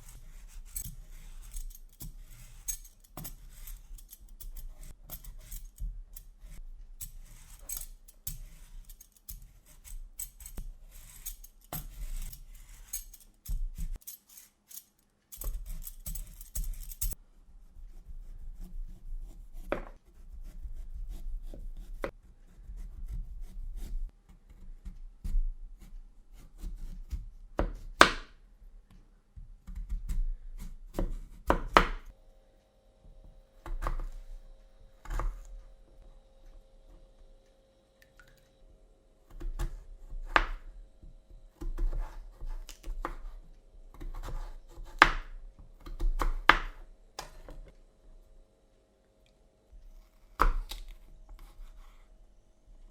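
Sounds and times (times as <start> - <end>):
knife chopping on cutting board: 19.6 - 20.6, 26.4 - 28.3, 29.7 - 32.1, 41.6 - 43.4, 44.0 - 47.5, 50.3 - 51.9.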